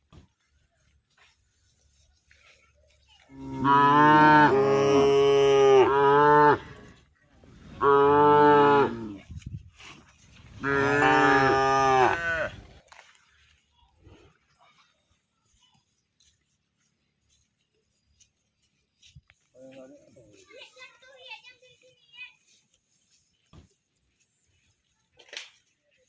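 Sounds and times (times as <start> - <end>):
cow mooing: 3.4 - 6.8, 7.8 - 9.2, 10.6 - 12.5.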